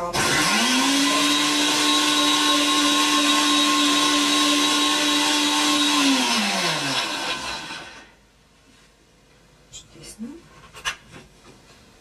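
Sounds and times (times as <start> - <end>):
blender motor whining: 0.0 - 8.1.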